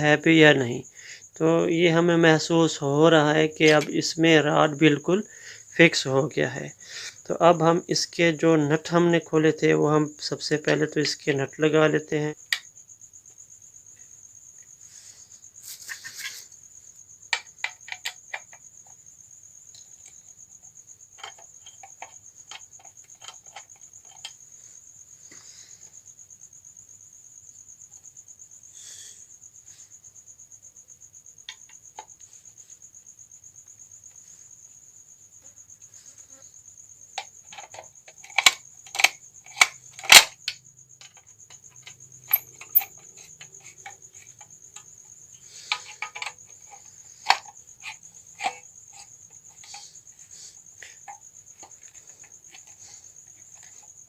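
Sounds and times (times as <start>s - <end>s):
cricket trill: 0.0s - 54.0s
small metal clicks and taps: 17.3s - 19.0s, 21.2s - 24.4s, 37.1s - 44.9s, 45.7s - 49.8s.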